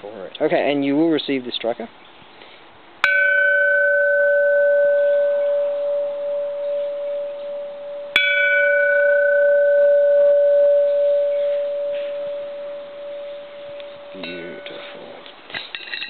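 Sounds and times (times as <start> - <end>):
temple bell struck: 3.0 - 15.0.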